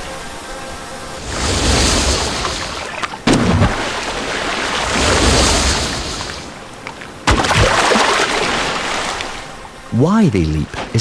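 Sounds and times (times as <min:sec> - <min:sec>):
sea wash: 0:00.0 - 0:11.0
loud splashes: 0:01.0 - 0:09.9.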